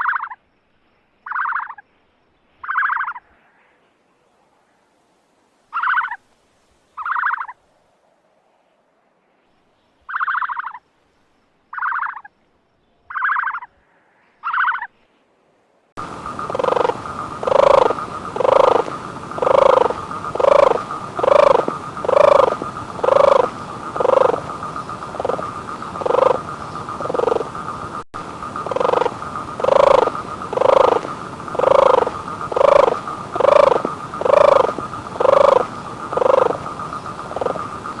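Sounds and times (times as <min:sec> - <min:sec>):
animal calls: 0:00.0 - 0:00.4, 0:01.3 - 0:01.8, 0:02.6 - 0:03.3, 0:05.7 - 0:06.2, 0:07.0 - 0:07.6, 0:10.1 - 0:10.8, 0:11.8 - 0:12.3, 0:13.1 - 0:13.8, 0:14.4 - 0:14.9, 0:16.4 - 0:27.8, 0:28.6 - 0:38.0
steady high drone: 0:16.0 - 0:38.0.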